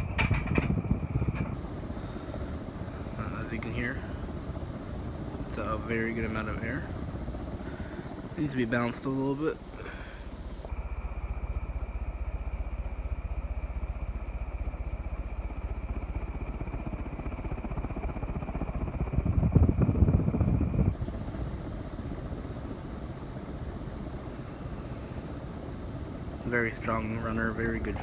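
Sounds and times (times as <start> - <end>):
ceiling fan whooshing: 0.0 - 12.0, 19.0 - 28.0.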